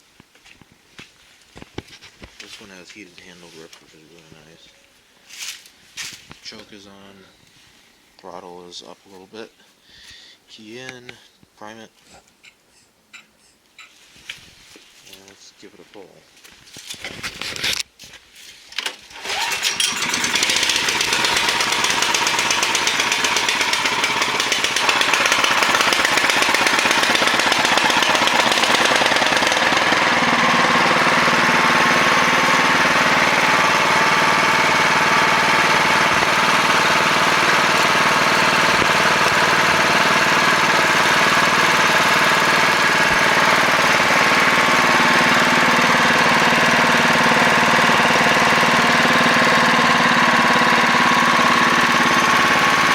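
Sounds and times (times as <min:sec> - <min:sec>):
snowblower engine starting and running: 0:18.7 - 0:52.9.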